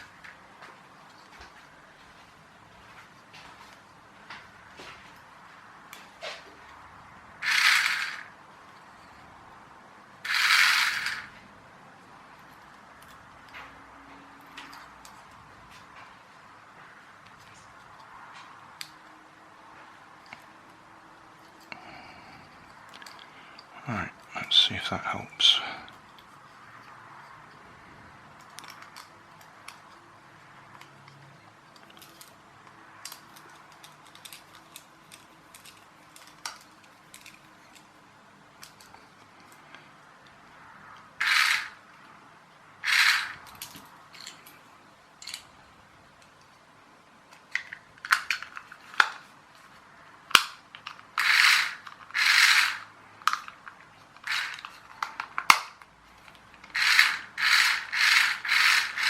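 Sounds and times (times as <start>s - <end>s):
short scraping rubs: 56.7s - 59.0s.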